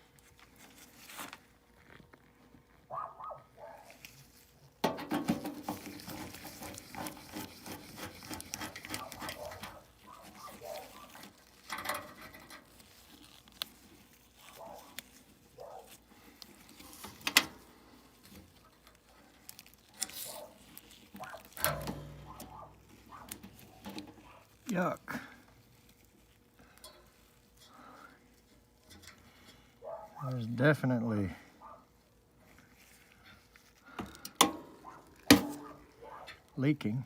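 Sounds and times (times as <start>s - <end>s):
tools clicking and scraping: 4.9s - 13.3s.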